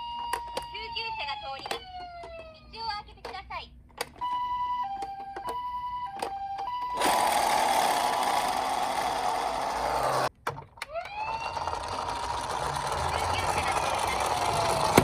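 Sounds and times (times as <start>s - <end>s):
toy ambulance hi-lo siren: 0.0s - 2.8s, 4.2s - 15.0s
toy police siren wailing: 0.0s - 2.8s, 4.2s - 15.0s
loud steady whirring: 7.0s - 10.3s, 11.1s - 15.0s.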